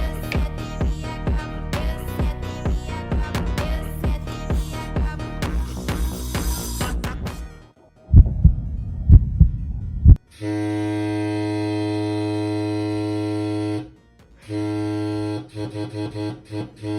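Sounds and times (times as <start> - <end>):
low rumbling: 7.9 - 10.3
sharp thumps: 8.1 - 10.2
ship horn blast: 10.3 - 16.9.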